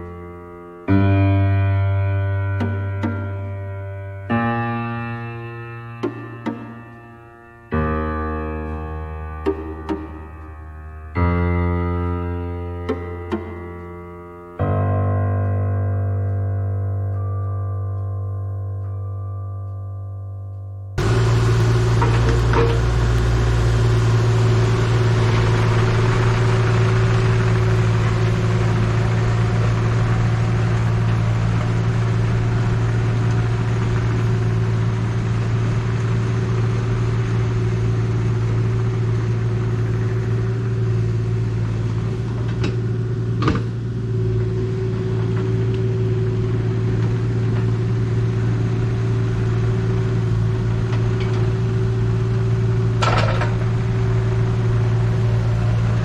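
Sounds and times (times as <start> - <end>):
tracked machine engine running: 2.6 - 3.7, 6.0 - 7.1, 9.4 - 10.6, 12.8 - 13.8, 21.0 - 56.0.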